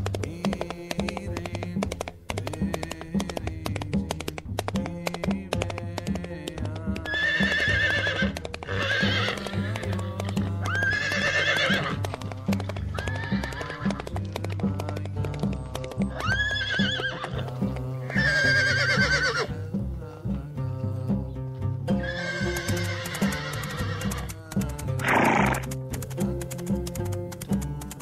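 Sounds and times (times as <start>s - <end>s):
background music with steady beat: 0.0s - 28.0s
horse neighing: 7.1s - 12.0s, 12.9s - 14.0s, 16.1s - 17.5s, 18.1s - 19.5s, 22.0s - 24.3s, 25.0s - 25.7s.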